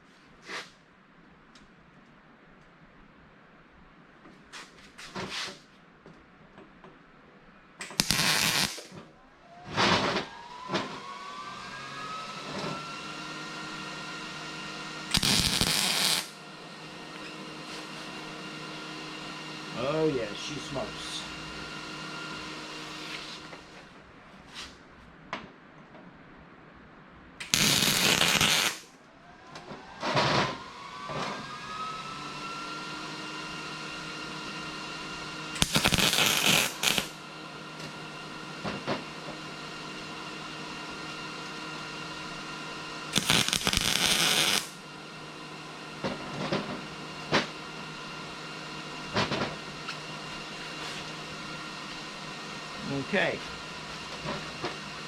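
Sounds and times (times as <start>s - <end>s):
welder arc bursts: 7.8s - 9.0s, 15.1s - 16.4s, 27.4s - 28.9s, 35.6s - 37.2s, 43.1s - 44.8s.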